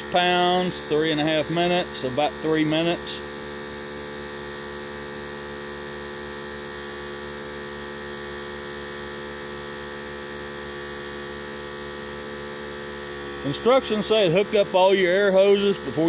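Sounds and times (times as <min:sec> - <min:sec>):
air compressor running: 0:00.0 - 0:16.0.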